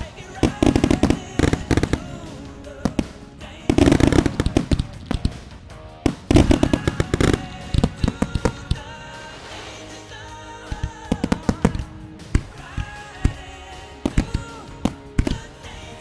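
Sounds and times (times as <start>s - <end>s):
fireworks cracking and banging: 0.0s - 16.0s
music: 0.0s - 16.0s.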